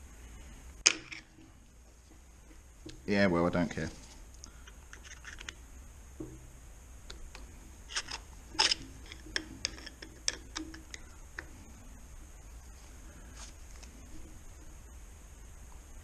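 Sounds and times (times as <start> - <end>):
metal scrape: 7.9 - 10.1.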